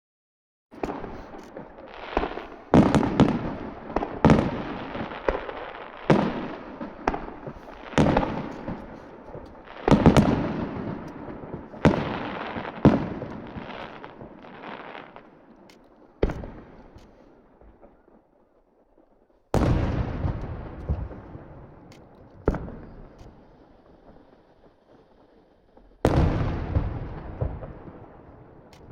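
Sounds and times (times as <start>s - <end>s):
firework shells bursting: 0.8s - 17.4s.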